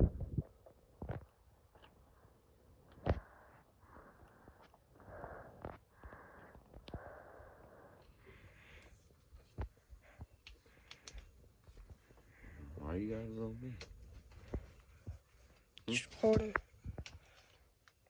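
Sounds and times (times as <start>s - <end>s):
close breathing: 1.9s - 12.9s, 13.7s - 15.8s, 16.8s - 17.8s
light clicks: 10.4s - 11.9s.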